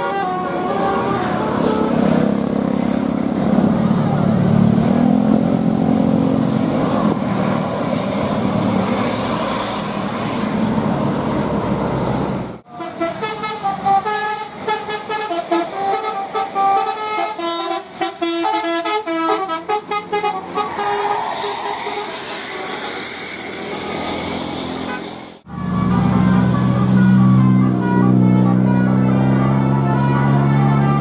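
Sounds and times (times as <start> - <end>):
multi-tone musical bus horn: 0.0 - 2.6, 12.6 - 21.2, 24.8 - 31.0
road vehicle rumble: 0.0 - 31.0.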